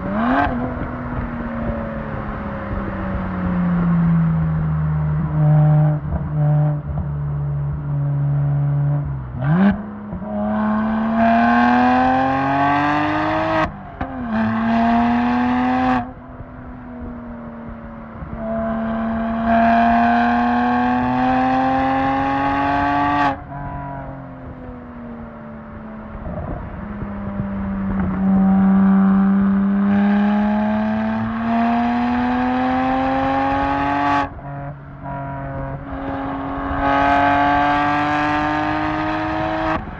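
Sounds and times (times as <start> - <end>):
car engine accelerating hard: 7.8 - 39.9.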